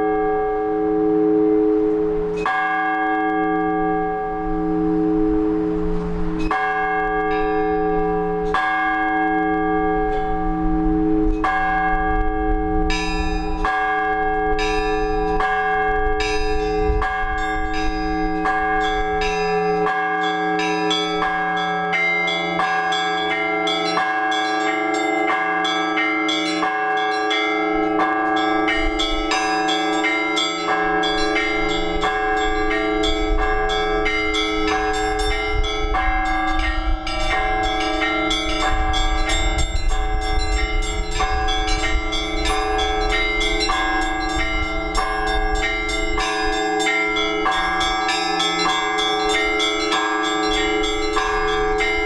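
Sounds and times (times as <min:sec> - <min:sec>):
hum of large bells: 0:00.0 - 0:52.0
small bells struck rapidly: 0:20.9 - 0:52.0.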